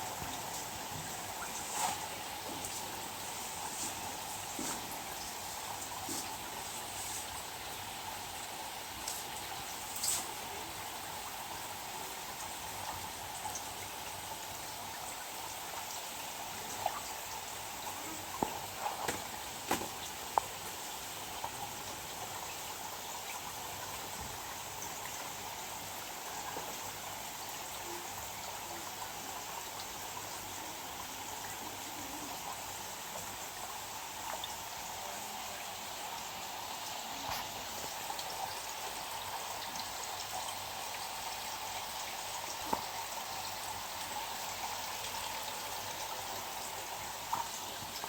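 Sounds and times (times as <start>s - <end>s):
steady water noise: 0.0s - 48.0s.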